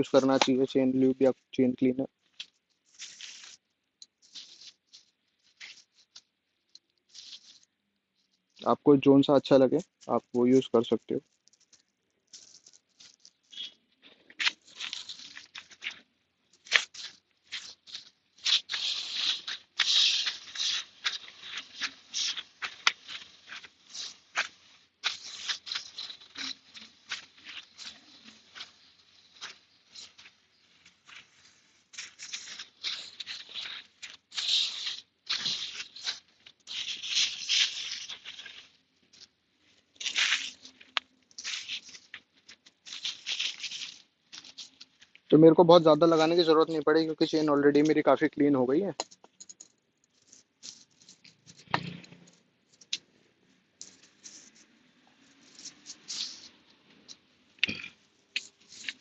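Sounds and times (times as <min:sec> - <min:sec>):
scratchy scrubbing strokes: 0:02.2 - 0:06.3, 0:07.0 - 0:08.7, 0:10.1 - 0:45.0, 0:50.1 - 0:56.7, 0:58.1 - 0:59.0
aerosol spray hissing: 0:18.3 - 0:30.1.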